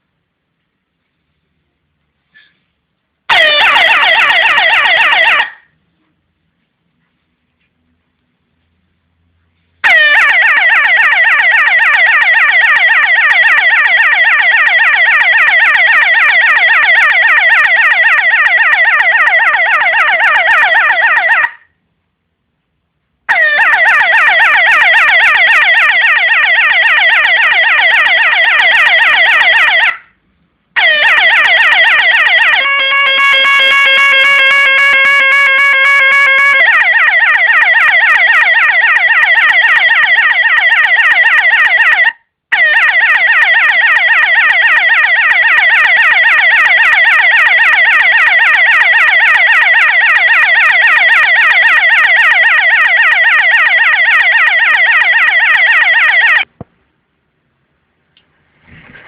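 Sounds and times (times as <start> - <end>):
electronic police siren yelp: 3.3 - 5.7, 9.8 - 21.8, 23.3 - 30.1, 30.8 - 56.5
steady horn tone: 32.3 - 36.9.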